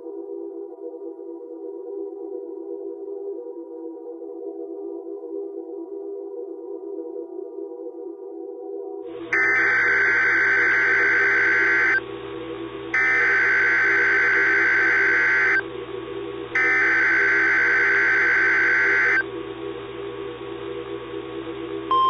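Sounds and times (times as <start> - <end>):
steady low drone: 9.1 - 22.0
buzzy digital data bursts: 9.4 - 12.0, 13.0 - 15.6, 16.6 - 19.2.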